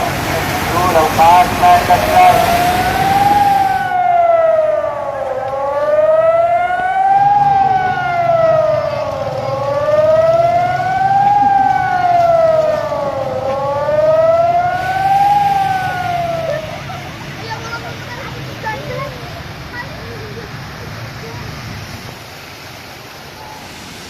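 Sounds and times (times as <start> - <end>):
siren wailing: 0.7 - 17.8.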